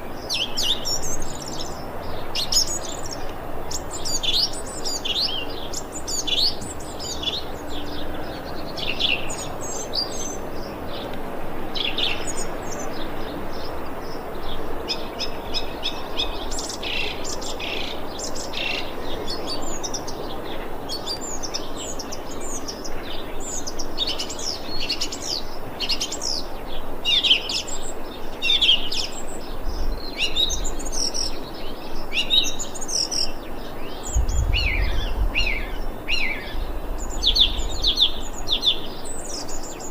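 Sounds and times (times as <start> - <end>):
steady background noise: 0.0 - 39.9
brief low rumble: 34.1 - 38.9.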